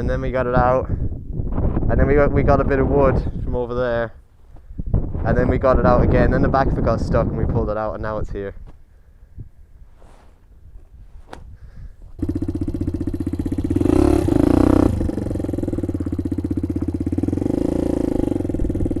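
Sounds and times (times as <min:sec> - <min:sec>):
small motorbike engine revving: 0:12.2 - 0:19.0.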